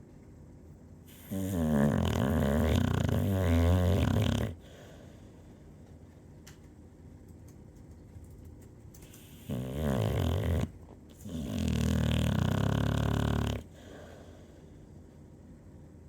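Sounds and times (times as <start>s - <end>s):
loud rattling snores: 1.1s - 4.6s, 9.4s - 13.7s.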